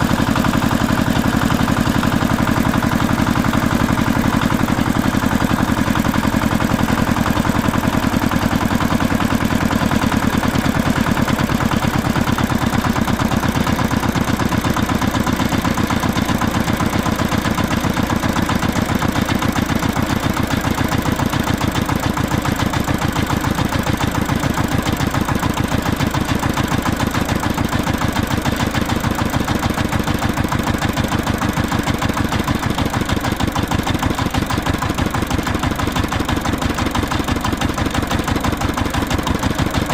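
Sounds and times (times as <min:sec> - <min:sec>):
tractor engine running: 0:00.0 - 0:39.9.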